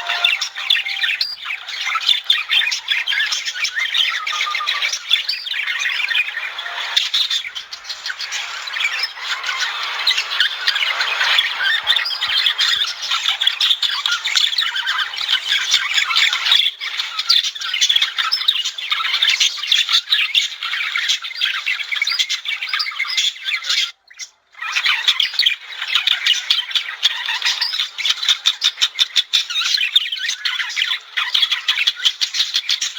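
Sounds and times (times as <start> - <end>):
budgerigars chattering: 0.0 - 23.8.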